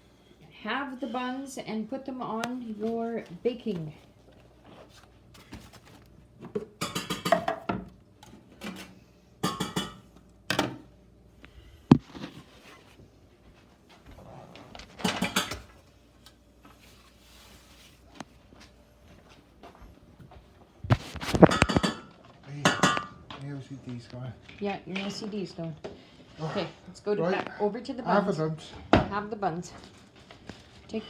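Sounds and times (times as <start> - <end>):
metal pans clattering: 6.6 - 7.8, 9.4 - 10.0, 15.0 - 15.7, 21.4 - 23.2.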